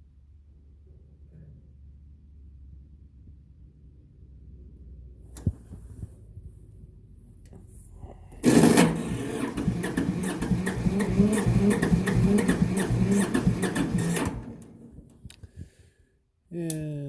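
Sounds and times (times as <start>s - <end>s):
diesel engine cranking: 8.4s - 15.4s.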